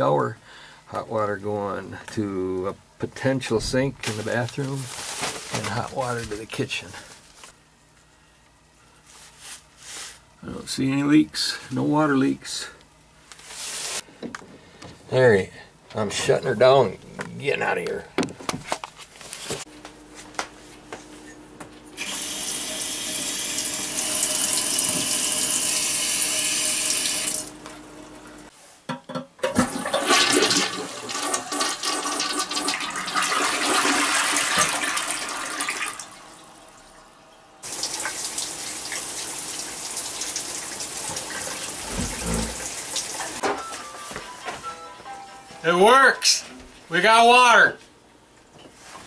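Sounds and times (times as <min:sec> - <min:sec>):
water rushing from taps: 0:22.0 - 0:28.4, 0:29.5 - 0:36.8, 0:37.6 - 0:43.4.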